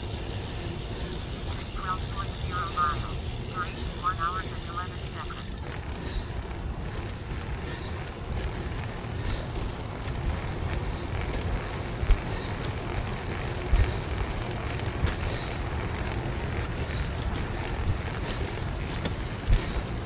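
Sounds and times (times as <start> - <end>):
trike rolling rumble: 0.0 - 20.0.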